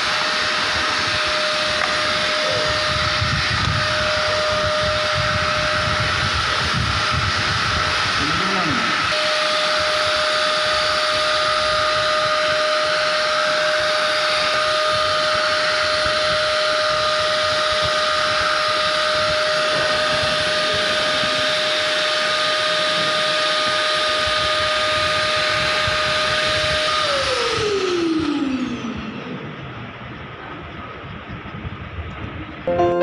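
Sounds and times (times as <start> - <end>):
vacuum cleaner running: 0.0 - 29.7
vacuum motor winding down: 0.0 - 29.7.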